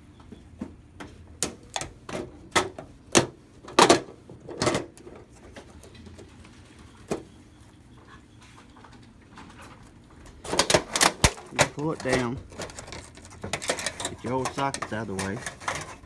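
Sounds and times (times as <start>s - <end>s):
plastic clicking on sheet metal: 10.2s - 16.0s.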